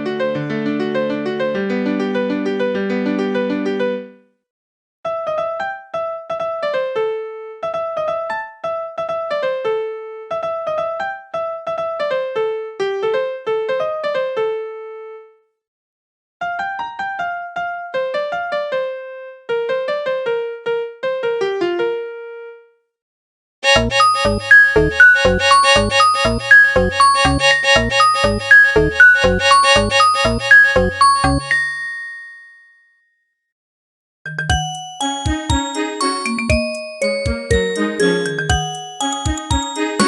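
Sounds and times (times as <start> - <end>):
electric piano ringtone melody: 23.6 - 32.9, 34.3 - 40.0.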